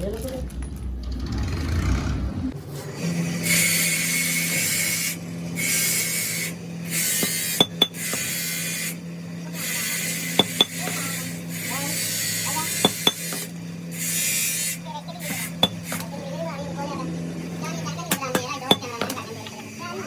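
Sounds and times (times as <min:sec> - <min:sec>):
steady low hum: 0:02.4 - 0:20.0
rasping filing strokes: 0:02.8 - 0:16.1.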